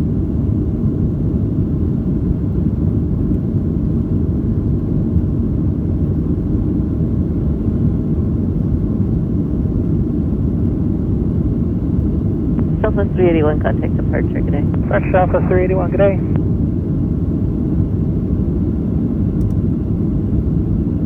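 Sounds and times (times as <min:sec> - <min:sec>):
airplane cabin rumble: 0:12.6 - 0:16.4.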